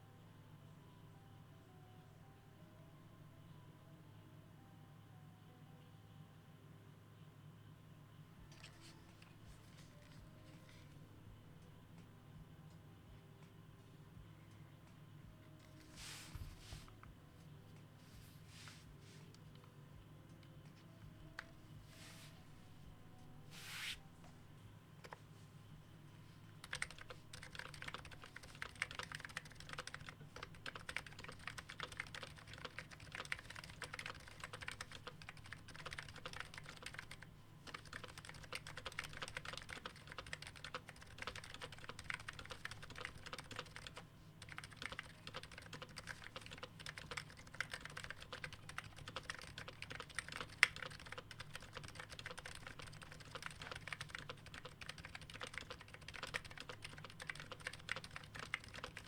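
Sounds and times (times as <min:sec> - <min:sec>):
keyboard typing: 0:08.5 - 0:11.0, 0:20.4 - 0:21.7, 0:26.4 - 0:59.0.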